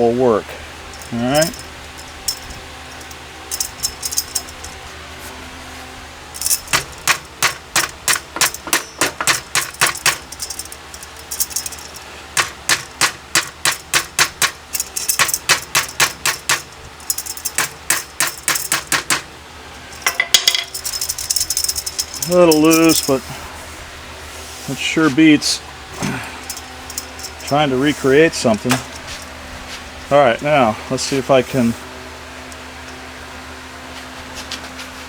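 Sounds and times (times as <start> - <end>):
hammer tapping metal pole: 20.0 - 20.8.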